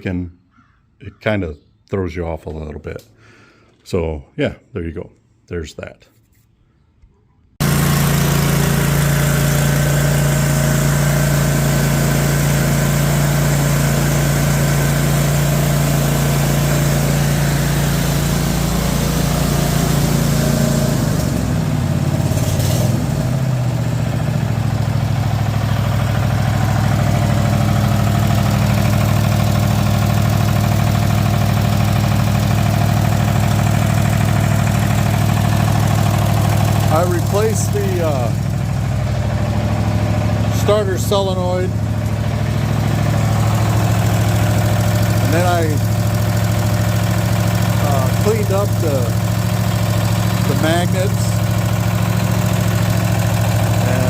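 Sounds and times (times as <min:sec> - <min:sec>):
lawn tractor engine idling: 0:07.6 - 0:54.0.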